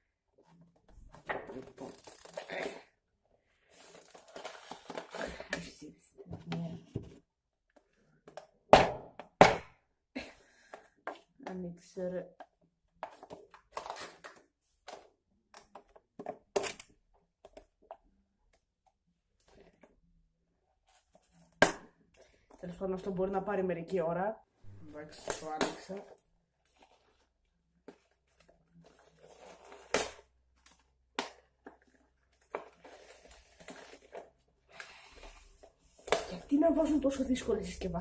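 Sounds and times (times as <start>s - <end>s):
packaging crinkling and scraping: 3.6s - 5.5s, 28.0s - 29.9s, 31.6s - 36.0s.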